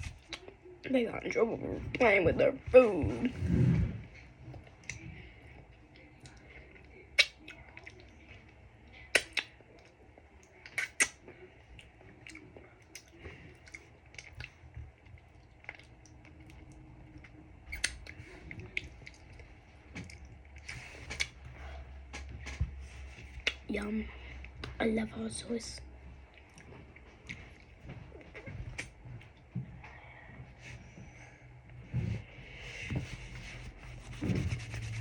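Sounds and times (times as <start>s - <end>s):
chewing and food clicks: 5.9s - 21.5s.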